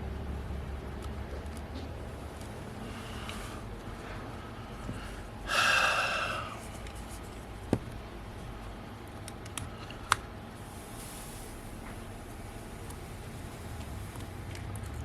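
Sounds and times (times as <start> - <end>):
person exhaling loudly: 5.5 - 6.6
sharp small clicks: 9.2 - 10.2.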